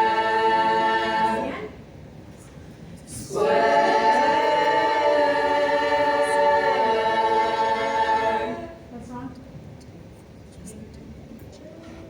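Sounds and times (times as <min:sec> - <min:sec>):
barbershop chorus singing a cappella: 0:00.0 - 0:01.8, 0:03.1 - 0:08.8.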